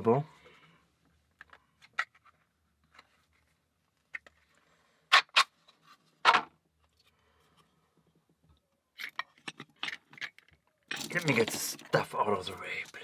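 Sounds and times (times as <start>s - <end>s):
small hard objects clicking: 9.0s - 13.0s.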